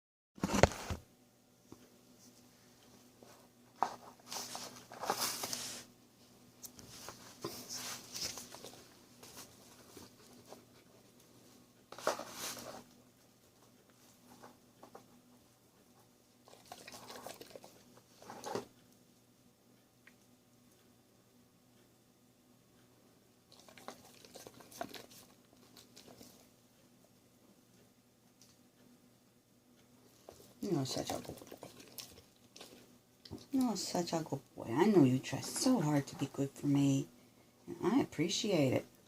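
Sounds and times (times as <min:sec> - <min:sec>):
rustling and handling noises: 0:00.4 - 0:19.0, 0:23.5 - 0:26.9, 0:30.0 - 0:36.6.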